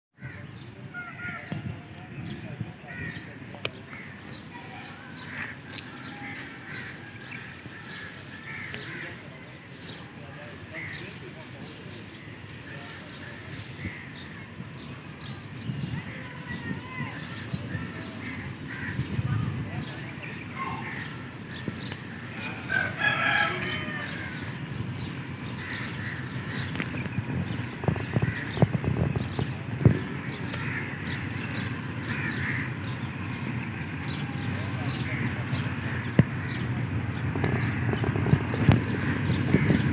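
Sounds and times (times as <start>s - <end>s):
diesel locomotive engine rumble: 0.2s - 39.9s
crows cawing: 1.0s - 1.5s, 5.2s - 9.2s, 17.2s - 19.5s, 20.6s - 21.6s, 22.3s - 24.6s, 25.6s - 26.7s, 28.2s - 28.6s, 30.2s - 31.2s, 32.0s - 32.9s, 35.0s - 36.6s, 38.9s - 39.9s
low rumble: 20.6s - 39.9s
rooster crowing: 22.5s - 24.4s.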